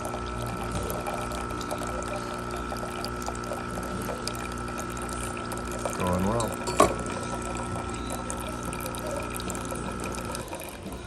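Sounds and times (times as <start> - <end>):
coffee pouring into cup: 0.0 - 11.0
espresso machine pump humming: 0.0 - 11.0.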